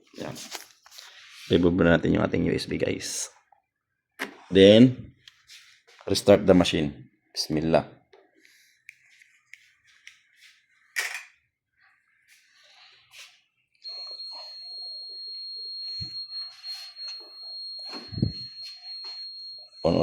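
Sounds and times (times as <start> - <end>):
ventilator high-pitched alarm: 13.8 - 20.0.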